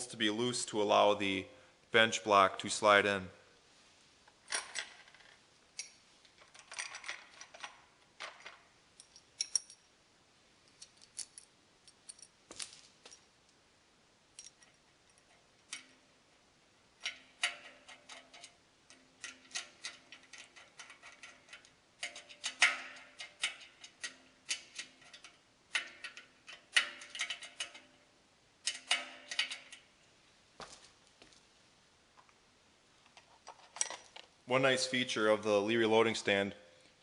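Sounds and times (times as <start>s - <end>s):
steel hardware clicking and clinking: 4.5s - 9.9s, 10.6s - 13.4s, 14.3s - 16.1s, 16.9s - 29.9s, 33.0s - 34.3s.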